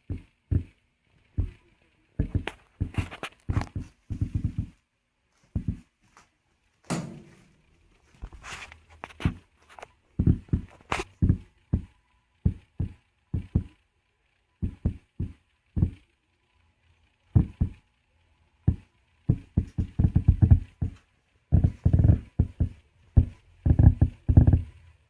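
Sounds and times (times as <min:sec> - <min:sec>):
subwoofer deep pops and knocks: 0:02.2 - 0:04.8, 0:17.4 - 0:17.8, 0:18.7 - 0:21.0, 0:21.6 - 0:24.7.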